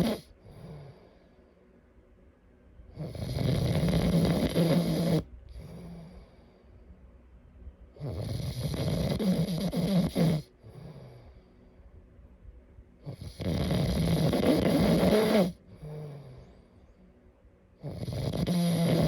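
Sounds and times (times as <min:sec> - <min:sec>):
person snoring: 0:00.0 - 0:01.2, 0:03.0 - 0:06.4, 0:08.0 - 0:11.4, 0:13.1 - 0:16.5, 0:17.8 - 0:19.0
soft breath: 0:00.3 - 0:02.0, 0:05.3 - 0:07.6, 0:10.5 - 0:12.7, 0:15.6 - 0:17.4.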